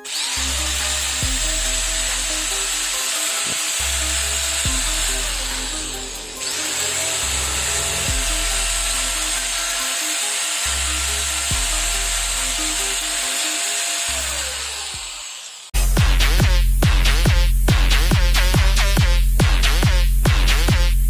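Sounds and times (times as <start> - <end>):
background music with steady beat: 0.0 - 15.2, 15.8 - 21.0
angle grinder running: 0.0 - 15.8.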